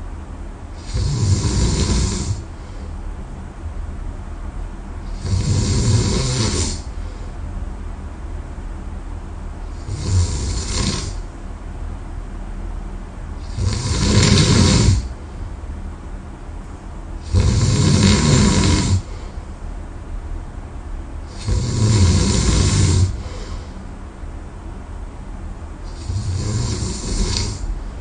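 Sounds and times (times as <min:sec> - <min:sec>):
person snoring: 0:00.8 - 0:02.4, 0:05.1 - 0:06.9, 0:09.7 - 0:11.2, 0:13.4 - 0:15.1, 0:17.2 - 0:19.2, 0:21.3 - 0:23.6, 0:25.9 - 0:27.7
breathing: 0:02.2 - 0:03.0, 0:06.8 - 0:07.4, 0:19.0 - 0:19.5, 0:23.0 - 0:23.9.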